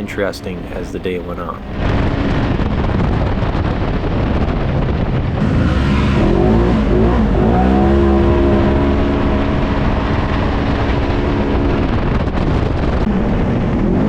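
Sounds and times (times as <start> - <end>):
loud rushing noise: 0.0 - 14.0
off-road vehicle engine revving: 5.4 - 14.0.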